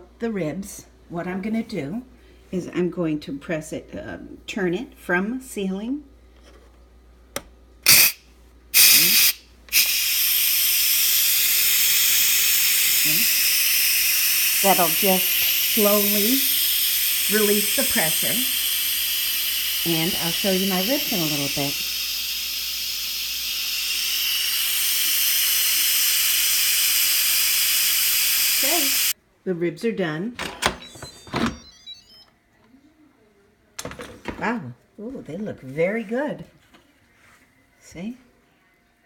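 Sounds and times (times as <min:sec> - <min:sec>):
valve click: 0:07.8 - 0:08.2, 0:08.8 - 0:29.2
steam hissing: 0:07.9 - 0:08.2, 0:08.8 - 0:29.2.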